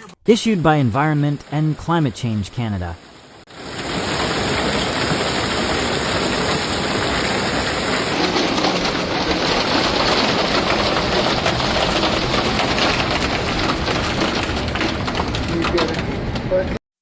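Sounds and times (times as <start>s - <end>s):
driving rain and wind: 0.3s - 16.8s
patter of small impacts: 3.7s - 16.7s.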